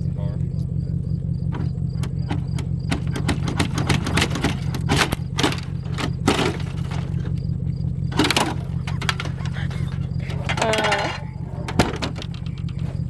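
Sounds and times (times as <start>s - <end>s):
low engine hum: 0.0s - 13.0s
metal clanks and scrapes: 2.1s - 7.3s, 8.1s - 13.0s.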